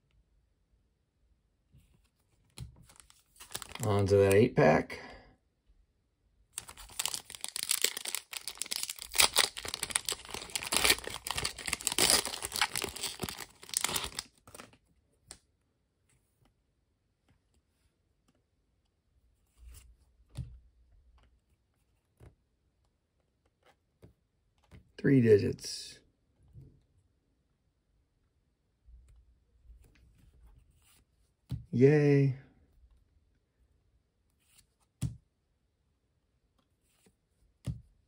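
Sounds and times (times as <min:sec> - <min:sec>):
plastic wrapper tearing and crinkling: 0:02.9 - 0:04.0, 0:06.6 - 0:14.7.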